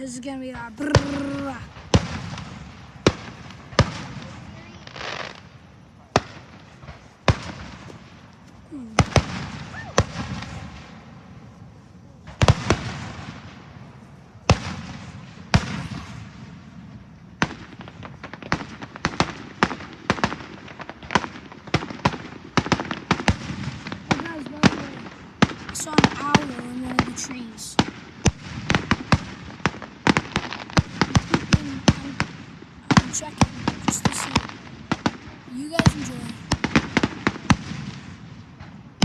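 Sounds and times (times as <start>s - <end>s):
fireworks booming: 0.0s - 39.0s.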